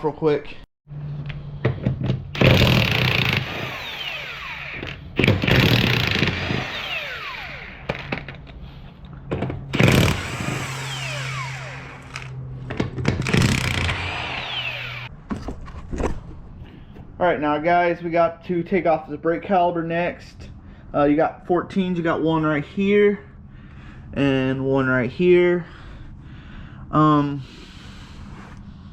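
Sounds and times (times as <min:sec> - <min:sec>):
impact wrench spinning with whine: 0:01.6 - 0:08.6, 0:09.6 - 0:15.1.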